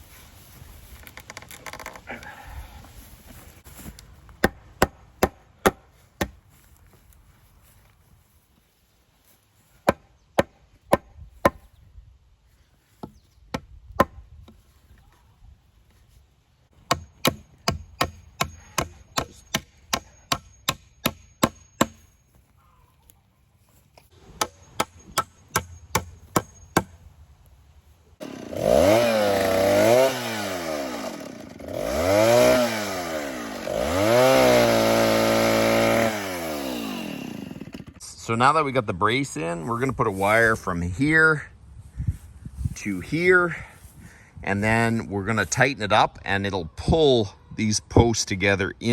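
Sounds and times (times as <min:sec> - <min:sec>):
sharp striking blows on wood: 0:04.4 - 0:06.4, 0:09.8 - 0:11.6, 0:16.8 - 0:22.1, 0:24.3 - 0:27.0
chainsaw revving: 0:28.2 - 0:38.0.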